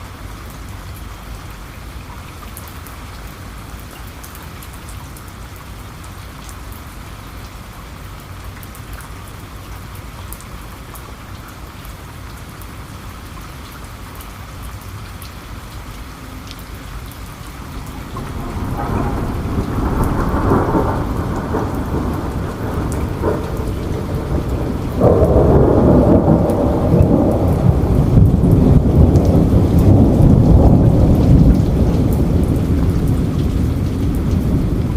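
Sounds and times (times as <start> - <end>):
rain patter: 0.0 - 34.9
thunder rumbling: 16.7 - 34.9.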